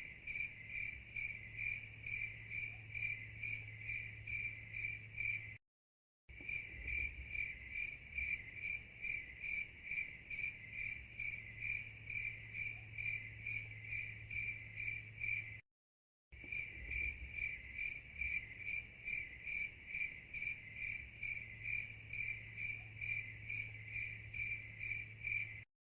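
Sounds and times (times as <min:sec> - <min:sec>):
cricket chirping: 0:00.0 - 0:05.6, 0:06.3 - 0:15.6, 0:16.4 - 0:25.7.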